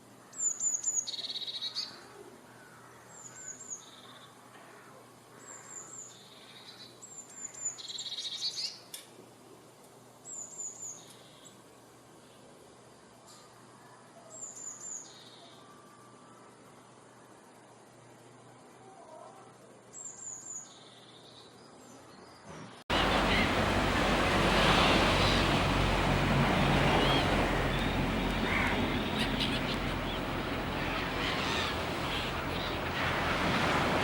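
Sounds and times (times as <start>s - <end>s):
bird chirps and calls: 26.6s - 32.8s.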